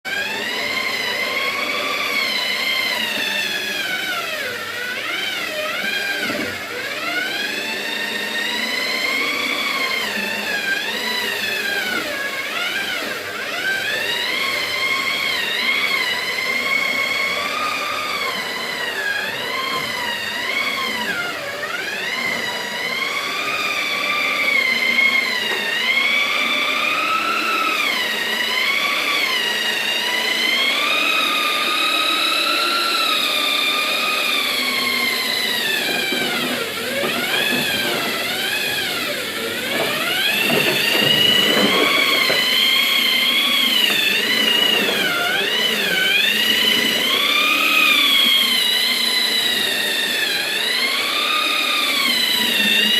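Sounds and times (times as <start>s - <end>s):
electric hand planer on wood: 0.0s - 52.9s.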